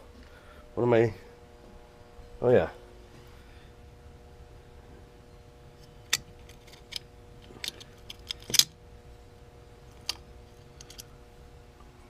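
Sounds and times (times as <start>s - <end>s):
metal bolts and tools clinking: 6.1s - 8.8s, 9.9s - 11.1s.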